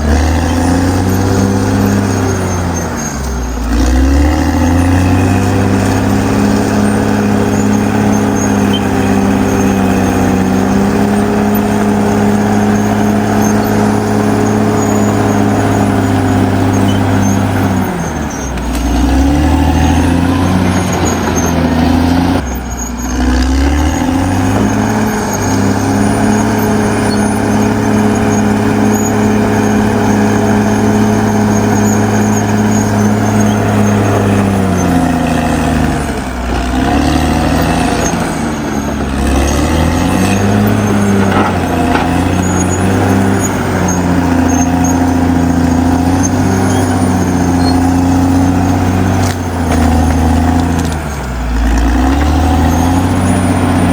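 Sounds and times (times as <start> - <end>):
bulldozer diesel engine under load: 0.0 - 53.9.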